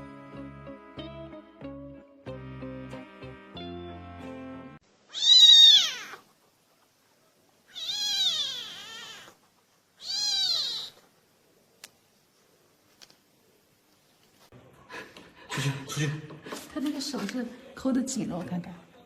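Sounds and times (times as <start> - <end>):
cat meowing: 5.1 - 6.2, 7.7 - 9.4, 10.0 - 11.0.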